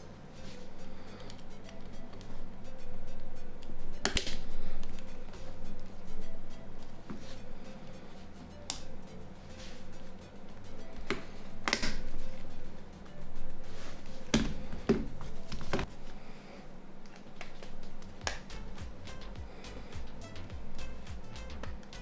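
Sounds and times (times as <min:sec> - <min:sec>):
soft background music: 0:00.0 - 0:22.0
plastic clicks and snaps: 0:04.0 - 0:05.1, 0:11.0 - 0:12.2, 0:17.0 - 0:18.5.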